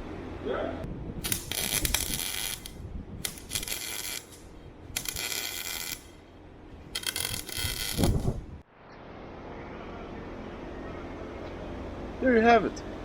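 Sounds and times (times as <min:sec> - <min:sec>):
welding arc crackling sizzle: 0:01.2 - 0:06.2, 0:06.8 - 0:08.6.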